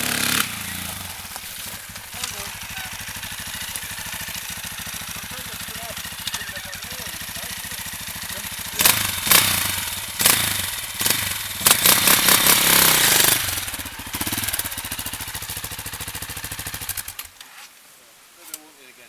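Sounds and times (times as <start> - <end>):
water splashing: 0.0 - 11.6
motorbike engine idling: 0.0 - 17.3.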